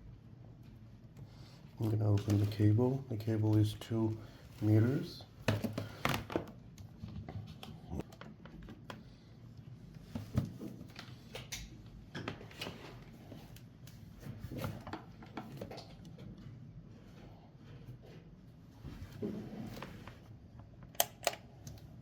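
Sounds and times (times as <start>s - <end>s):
cable handling clicks and rustles: 1.1s - 16.6s.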